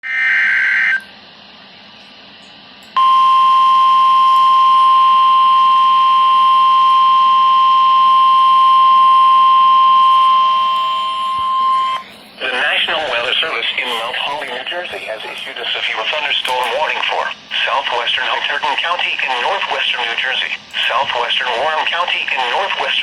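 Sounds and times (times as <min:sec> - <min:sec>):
screeching data burst: 0:00.0 - 0:01.1
steady alert tone: 0:03.0 - 0:17.5.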